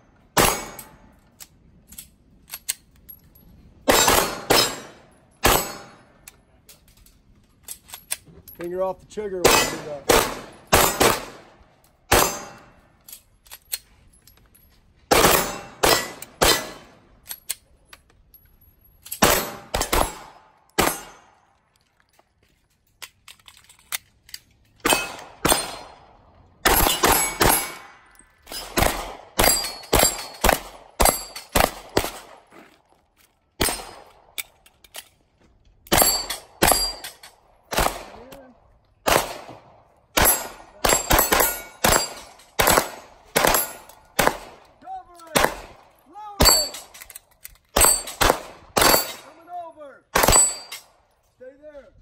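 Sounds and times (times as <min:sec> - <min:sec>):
pistol shots: 0:00.3 - 0:01.0, 0:03.8 - 0:06.0, 0:09.4 - 0:12.7, 0:15.1 - 0:17.0, 0:19.2 - 0:21.4, 0:24.8 - 0:32.5, 0:33.6 - 0:34.4, 0:35.9 - 0:38.4, 0:39.0 - 0:44.7, 0:45.3 - 0:46.9, 0:47.7 - 0:49.3, 0:50.1 - 0:51.0.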